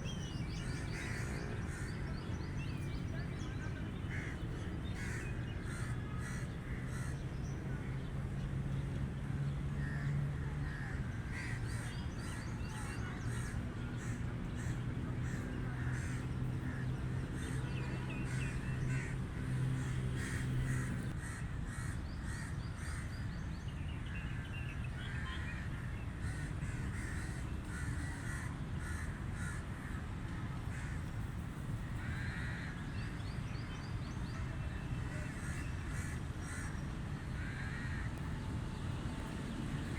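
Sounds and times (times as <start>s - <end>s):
crows cawing: 0.8s - 1.9s, 5.0s - 7.2s, 10.7s - 23.0s, 26.2s - 30.0s, 32.0s - 32.8s, 35.3s - 38.2s.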